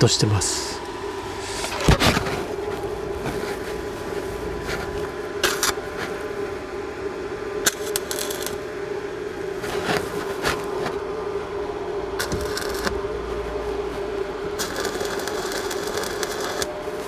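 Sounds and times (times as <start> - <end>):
welder hum: 0.0 - 17.0
welding arc crackling: 1.7 - 6.3, 7.6 - 8.7, 12.2 - 13.2, 14.6 - 17.0.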